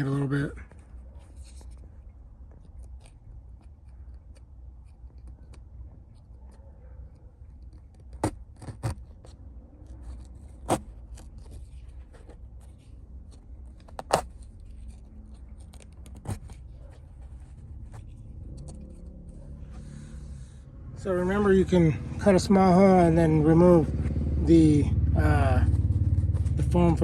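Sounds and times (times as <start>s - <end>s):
scissors snipping foam: 7.2s - 16.9s.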